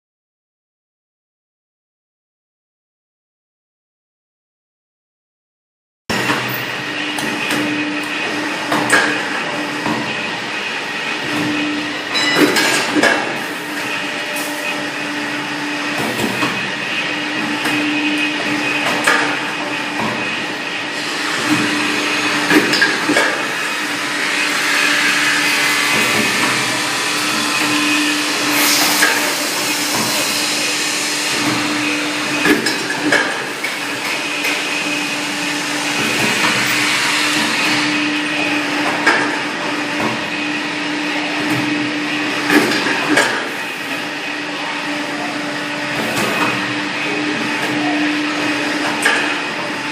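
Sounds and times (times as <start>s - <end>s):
wire bending machine humming: 6.1s - 49.9s
machine clicks and clanks: 32.4s - 34.6s, 42.4s - 43.6s.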